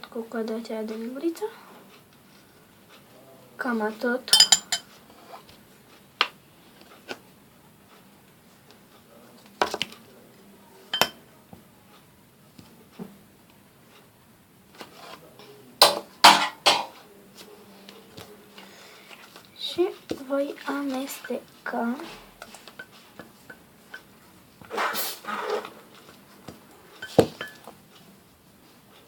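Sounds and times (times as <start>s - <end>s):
teaspoon clinking against a bowl: 4.3s - 4.9s, 10.9s - 11.2s, 27.0s - 27.7s.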